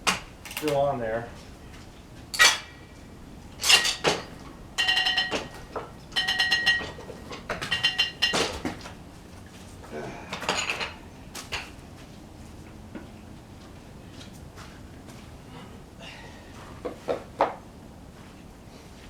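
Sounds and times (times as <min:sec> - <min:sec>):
sawmill machinery clanking: 0:02.4 - 0:08.9.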